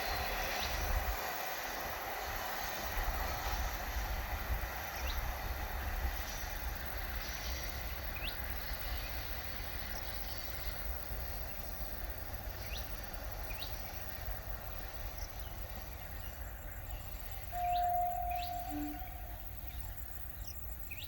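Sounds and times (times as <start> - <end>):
train hum: 0.0 - 21.0
steady single tone: 17.5 - 19.8
rising bird chirps: 17.5 - 20.0.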